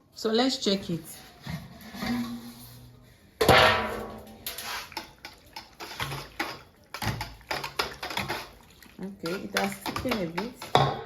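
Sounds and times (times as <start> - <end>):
utensil clicking and scraping batter: 4.4 - 10.9.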